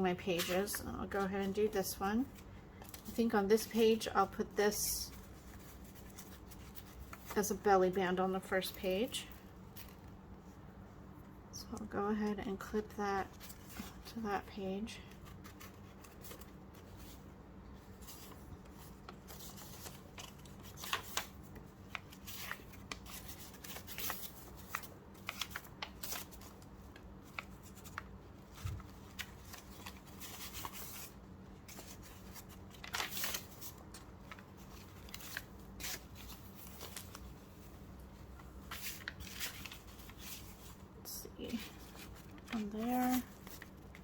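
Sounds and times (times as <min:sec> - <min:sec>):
faint steady hum: 0:00.0 - 0:44.0
paper pages rustling: 0:00.2 - 0:04.4, 0:05.0 - 0:07.9, 0:15.0 - 0:44.0.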